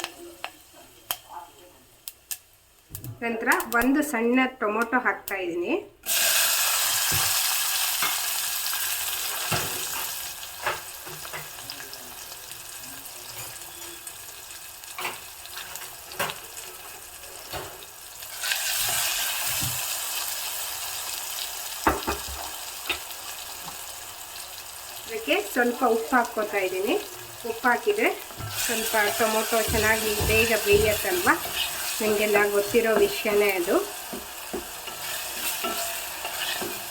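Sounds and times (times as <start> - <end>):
tomato sizzling in oil: 6.0 - 36.9
spoon knocking against pan: 21.8 - 23.0, 29.4 - 33.3, 34.1 - 34.8.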